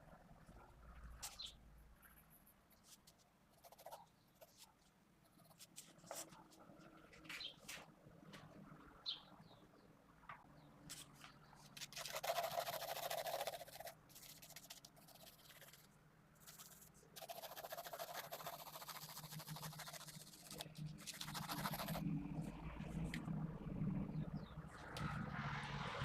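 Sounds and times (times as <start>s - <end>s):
pencil scratching on paper: 2.8s - 4.7s, 11.8s - 22.0s.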